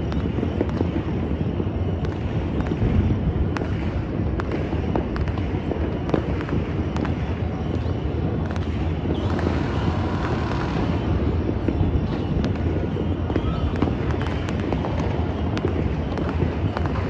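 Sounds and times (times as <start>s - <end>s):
fireworks and firecrackers banging: 0.0s - 17.0s.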